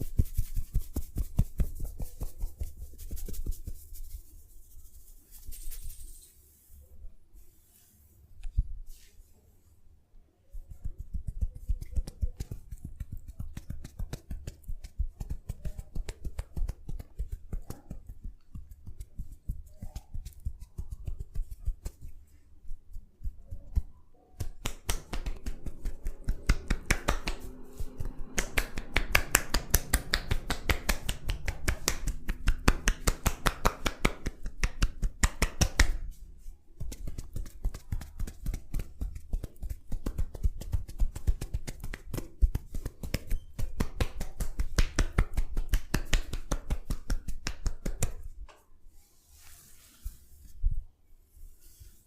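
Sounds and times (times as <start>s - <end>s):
rhythmic tapping on head: 0.0s - 4.3s, 10.7s - 36.2s, 36.8s - 48.3s.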